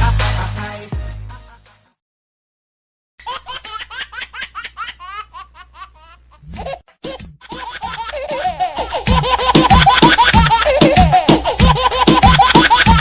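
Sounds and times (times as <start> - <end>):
baby laughing: 3.2 - 13.0.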